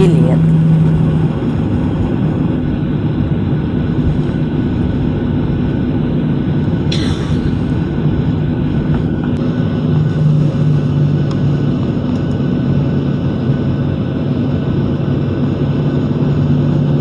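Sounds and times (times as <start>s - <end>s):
vehicle rumble: 0.0s - 17.0s.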